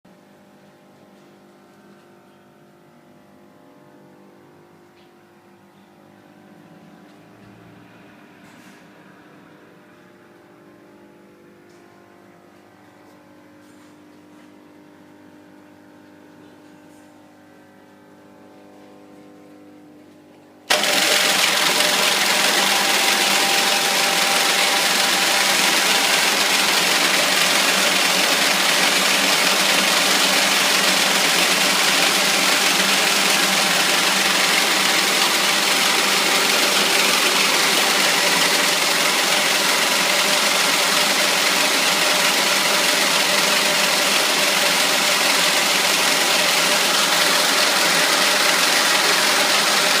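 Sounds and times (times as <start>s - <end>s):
braiding machine running: 20.7s - 50.0s.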